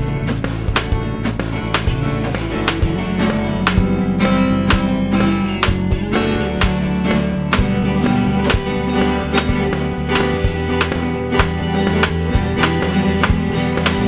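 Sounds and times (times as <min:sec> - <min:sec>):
guitar: 0:00.0 - 0:14.0
steady beat: 0:00.0 - 0:14.0.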